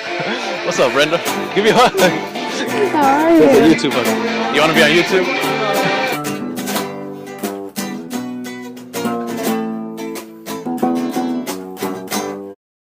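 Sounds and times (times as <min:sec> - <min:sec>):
strummed string instrument chords: 0:00.8 - 0:10.0.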